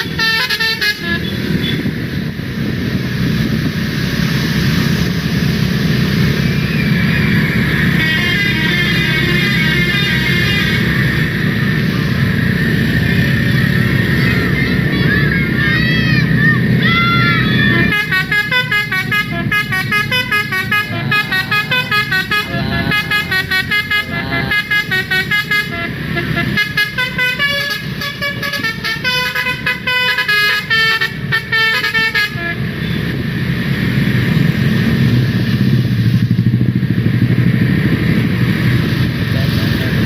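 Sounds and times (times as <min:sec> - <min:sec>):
musical bus horn playing a tune: 0:00.0 - 0:01.9, 0:07.8 - 0:11.2, 0:17.2 - 0:33.0
bus engine rumbling: 0:00.0 - 0:40.0.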